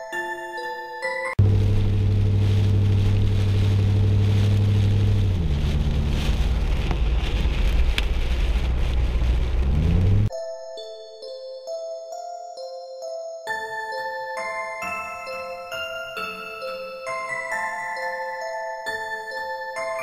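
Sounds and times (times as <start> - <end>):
car engine running: 1.4 - 10.3
road and wind noise: 1.4 - 10.3.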